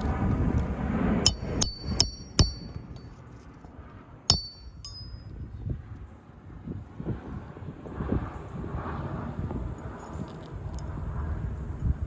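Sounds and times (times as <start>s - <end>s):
hammer tapping on metal: 1.3s - 3.1s, 4.3s - 5.2s.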